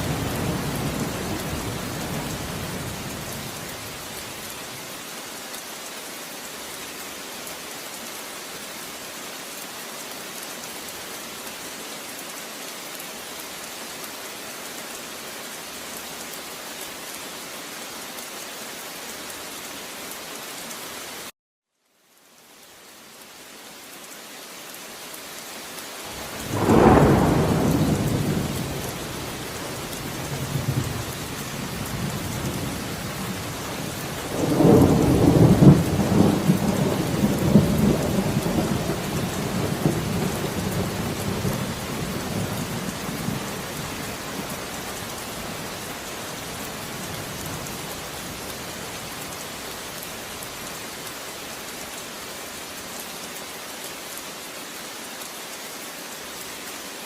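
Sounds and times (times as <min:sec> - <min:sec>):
steady rain: 0:00.0 - 0:57.0
thunder rumbling: 0:26.1 - 0:43.5.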